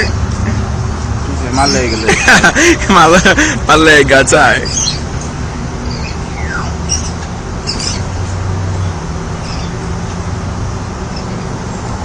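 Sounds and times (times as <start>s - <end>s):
bird chirping: 1.5s - 2.1s, 4.6s - 5.2s, 5.8s - 8.2s, 8.8s - 9.8s.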